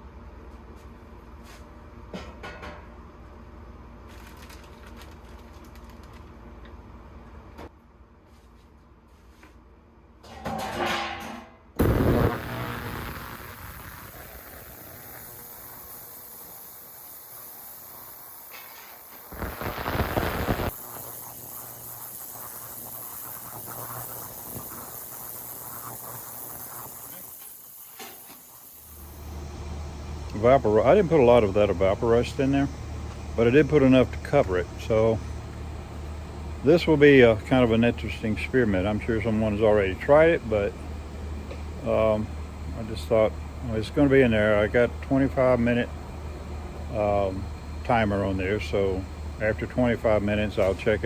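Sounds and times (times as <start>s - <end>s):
loud rush of noise: 11.8s - 15.1s, 19.3s - 20.8s
steady low hum: 11.8s - 51.0s.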